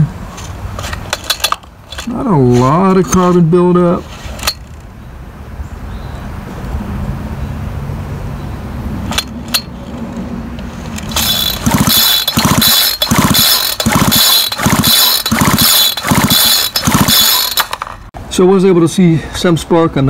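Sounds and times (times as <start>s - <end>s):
recoil starter pulls whirring: 10.9s - 18.1s.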